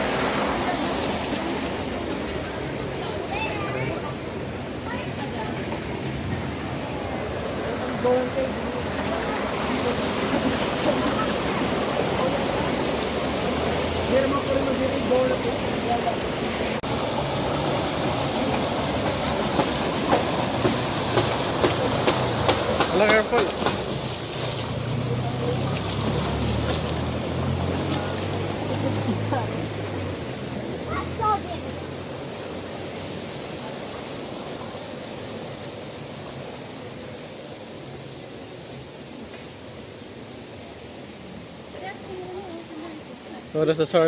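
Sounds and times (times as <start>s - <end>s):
flowing spring water: 0.0s - 44.0s
water pouring into a pool: 7.4s - 20.0s.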